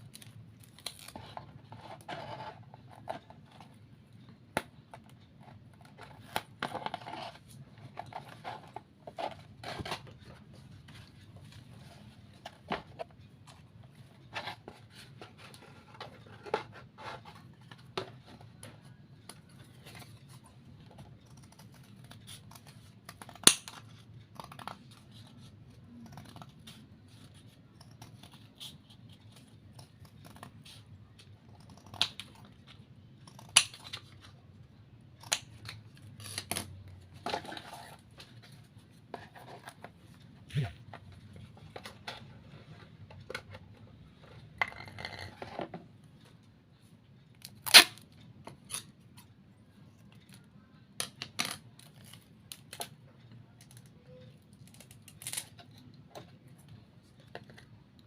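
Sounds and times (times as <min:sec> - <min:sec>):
scissors cutting paper: 0:05.0 - 0:34.4.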